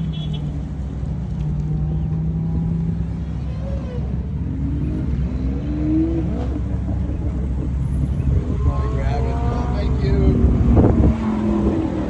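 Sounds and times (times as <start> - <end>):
car engine revving: 0.0 - 12.0
car engines rumbling: 0.0 - 12.0.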